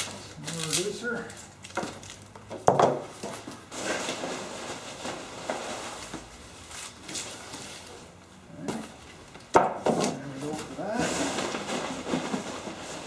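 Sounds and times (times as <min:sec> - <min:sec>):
packing peanuts rustling: 0:00.0 - 0:02.4, 0:03.3 - 0:08.0, 0:10.2 - 0:13.0.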